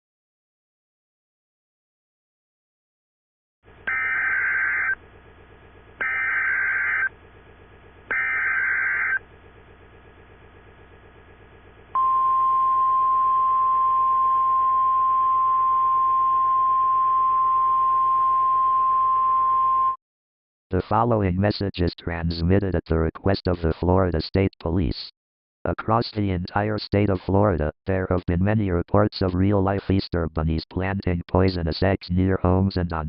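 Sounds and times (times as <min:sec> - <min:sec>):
warbling digital data tones: 0:08.1 - 0:09.2.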